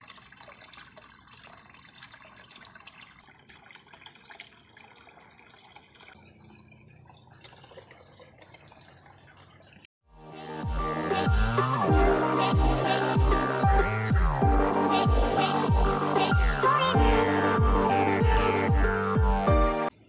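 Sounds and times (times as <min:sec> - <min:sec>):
water dripping: 0:00.0 - 0:09.9
water trickling: 0:00.0 - 0:09.9
electronic music with bass sweeps: 0:10.2 - 0:19.9.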